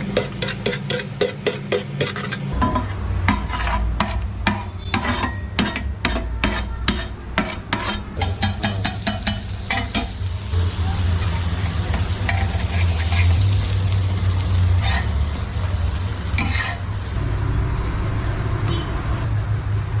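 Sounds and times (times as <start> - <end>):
metal spatula scraping iron pan: 0.0 - 10.2, 11.9 - 13.6, 14.7 - 15.3, 16.4 - 17.1
food sizzling: 8.2 - 17.2.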